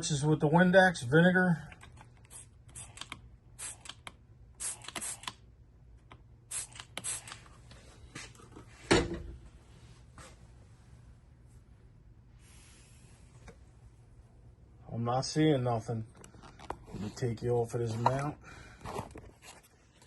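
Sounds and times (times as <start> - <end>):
spray bottle spritzes: 2.3 - 4.0, 4.6 - 5.4, 6.5 - 7.4.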